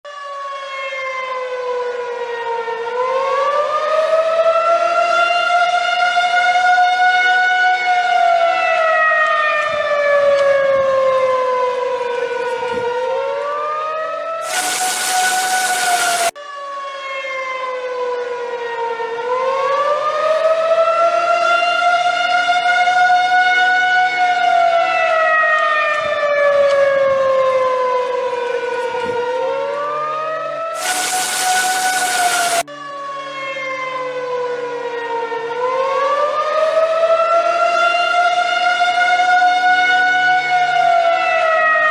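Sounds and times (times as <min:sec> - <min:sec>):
outdoor warning siren: 0:00.0 - 0:41.9.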